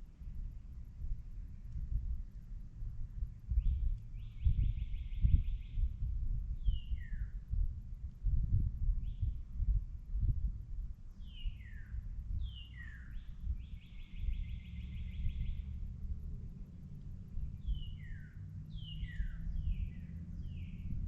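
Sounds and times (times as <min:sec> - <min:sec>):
low rumble: 0:00.0 - 0:21.0
songbirds singing: 0:00.2 - 0:07.6, 0:09.0 - 0:09.6, 0:11.1 - 0:21.0
bird trill: 0:17.6 - 0:20.8.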